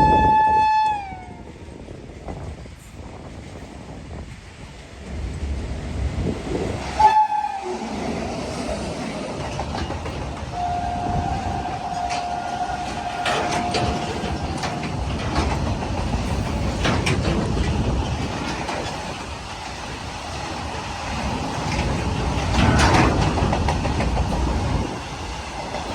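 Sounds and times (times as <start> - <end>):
train horn blast: 0.0 - 1.5, 7.0 - 8.0, 10.5 - 14.9
freight train rumbling past: 0.0 - 25.9
wheels clicking over rail joints: 1.8 - 25.9.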